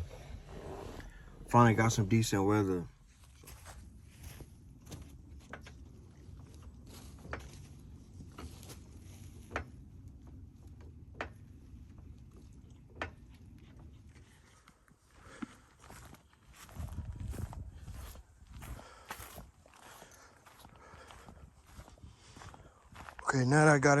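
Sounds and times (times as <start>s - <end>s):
low steady rumble: 0.0s - 12.8s.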